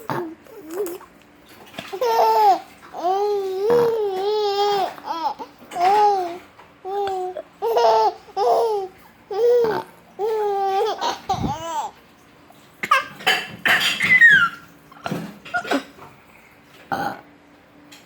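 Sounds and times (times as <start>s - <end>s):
baby laughing and babbling: 0.0s - 1.1s, 1.9s - 12.0s, 12.8s - 16.0s.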